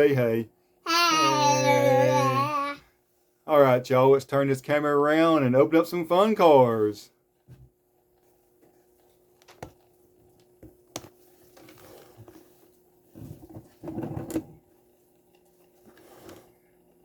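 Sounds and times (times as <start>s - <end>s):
handling rustling and shuffling: 10.6s - 17.0s.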